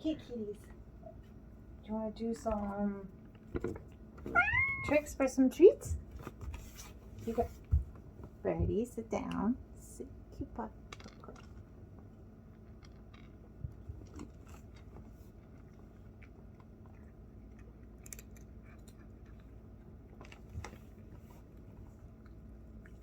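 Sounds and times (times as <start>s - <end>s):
cat chewing crunchy treat: 10.8s - 23.0s.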